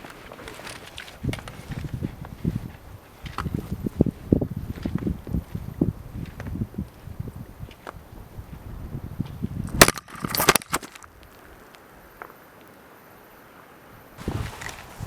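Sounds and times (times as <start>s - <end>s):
footsteps on forest floor: 0.0s - 8.0s, 14.2s - 15.0s
twigs cracking underfoot: 0.0s - 8.0s, 9.3s - 12.7s.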